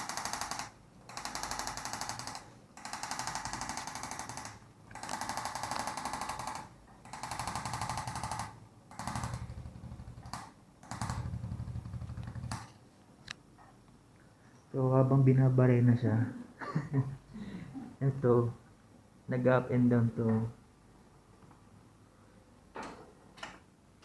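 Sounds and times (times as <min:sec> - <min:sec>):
electric massager buzzing: 0:00.0 - 0:12.7.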